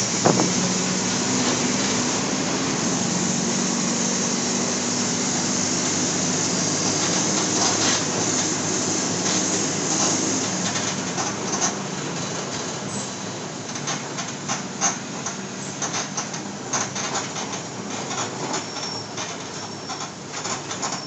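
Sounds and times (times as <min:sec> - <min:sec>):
bus diesel engine running: 0:00.0 - 0:18.6
sharp knock: 0:00.2 - 0:00.6.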